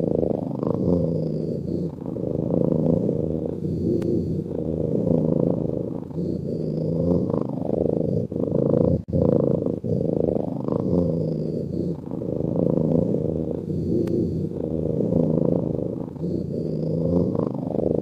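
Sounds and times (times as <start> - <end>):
cat breathing with low rumble: 0.0 - 18.0.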